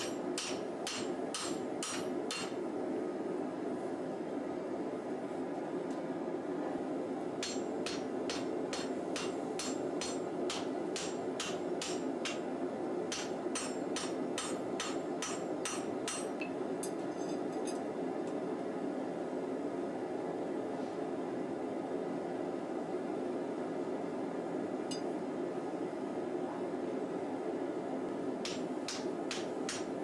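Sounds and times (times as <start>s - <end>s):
hammer striking steel on anvil: 0.0s - 2.6s, 7.4s - 12.5s, 13.1s - 17.5s, 28.4s - 30.0s.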